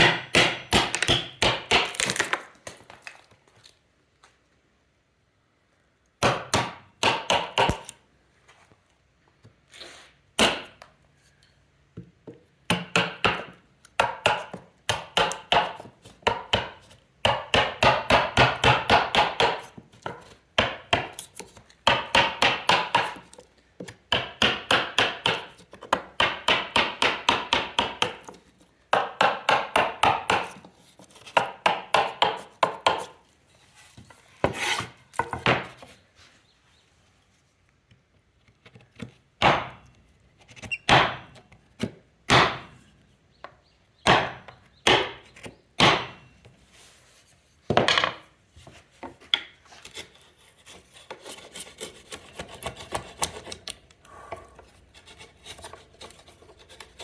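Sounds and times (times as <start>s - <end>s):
hammer striking chisel into wood: 0.0s - 2.0s, 6.2s - 7.9s, 10.4s - 10.8s, 12.7s - 21.2s, 21.8s - 23.3s, 24.1s - 30.6s, 31.4s - 33.1s, 39.4s - 39.8s, 40.9s - 41.3s, 42.3s - 42.7s, 44.0s - 45.2s, 45.8s - 46.2s.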